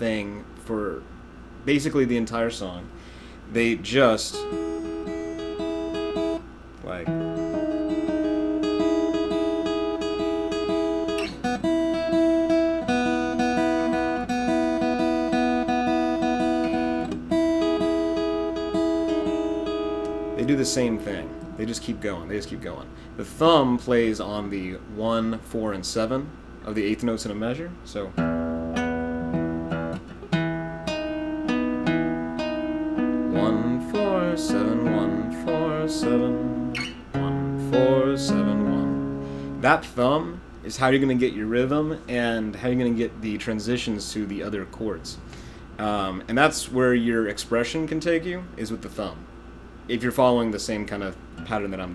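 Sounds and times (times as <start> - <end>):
fingerpicked acoustic guitar: 4.3 - 24.0, 28.2 - 39.9.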